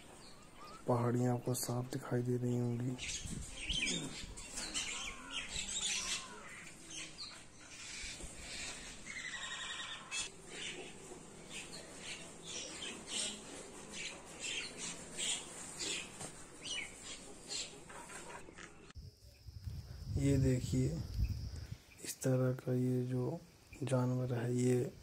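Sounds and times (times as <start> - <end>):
birds chirping: 0.0 - 25.0
harsh bird call: 3.0 - 7.1, 7.8 - 10.8.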